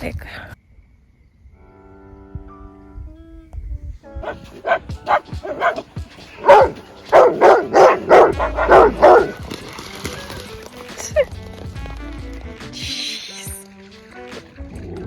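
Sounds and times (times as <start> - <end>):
dog barking: 4.2 - 9.5.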